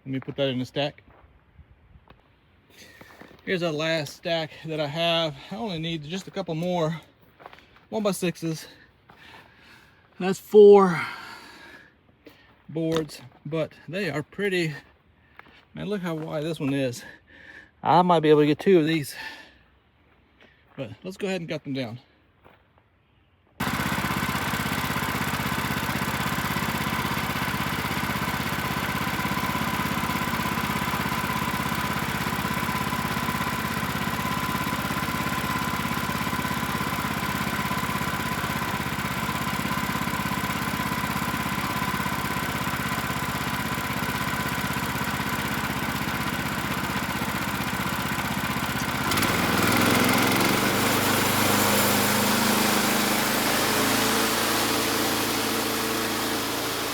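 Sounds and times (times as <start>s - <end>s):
sawmill engine running: 2.8s - 7.1s, 23.6s - 56.9s.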